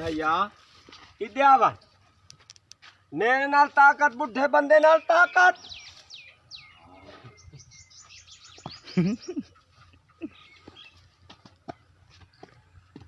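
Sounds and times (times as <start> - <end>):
small birds chirping: 4.4 - 13.0.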